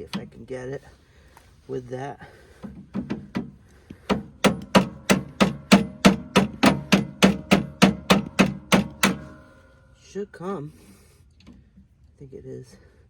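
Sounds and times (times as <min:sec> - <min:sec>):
rapid hammer taps on metal: 0:02.6 - 0:09.6.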